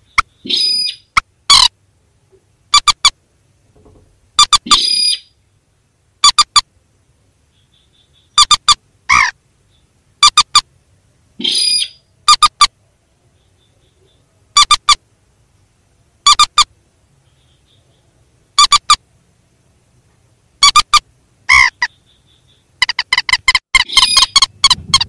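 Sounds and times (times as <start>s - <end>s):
sharp bird call notes: 0.0s - 1.7s, 4.4s - 5.4s, 11.4s - 12.7s, 20.6s - 25.0s
rasping bird call: 0.0s - 1.8s, 4.4s - 5.4s, 8.1s - 9.4s, 11.4s - 12.7s, 20.6s - 25.0s.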